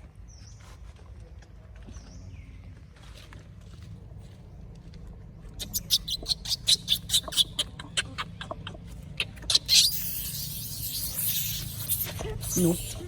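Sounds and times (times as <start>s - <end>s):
monkey high-pitched calls: 5.6s - 13.0s.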